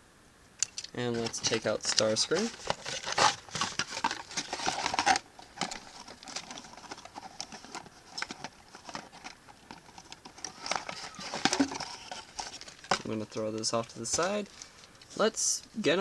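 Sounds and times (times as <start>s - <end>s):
plastic packaging crinkling: 0.6s - 15.3s.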